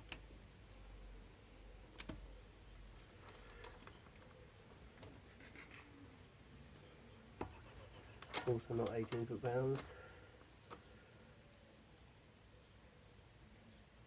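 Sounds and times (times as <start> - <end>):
faint tool handling sounds: 2.9 - 10.9.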